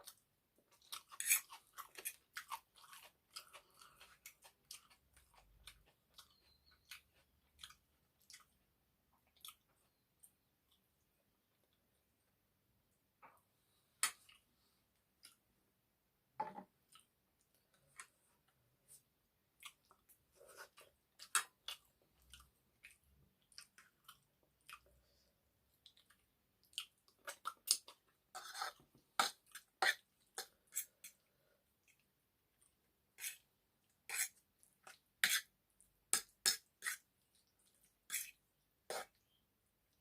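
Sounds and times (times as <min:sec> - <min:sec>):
wet chewing sounds: 0:00.0 - 0:11.0, 0:16.9 - 0:31.2.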